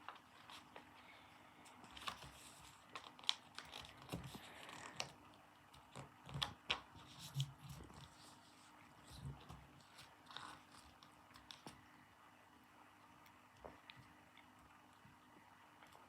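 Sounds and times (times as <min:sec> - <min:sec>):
paper rustling and crackling: 0:00.0 - 0:00.9, 0:01.6 - 0:05.2, 0:05.8 - 0:11.8.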